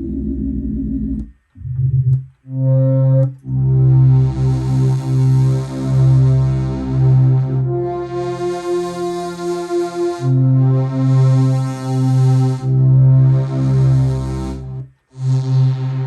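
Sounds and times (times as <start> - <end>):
heavy synth bass: 0.0 - 8.9
synthesizer held notes: 0.0 - 16.0.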